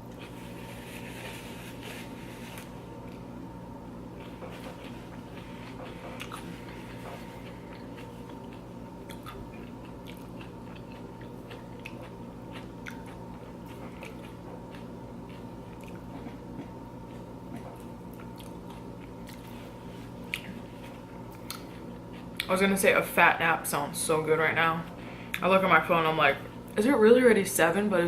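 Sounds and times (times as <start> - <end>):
chewing crunchy nachos: 0.0 - 3.3, 4.1 - 22.5.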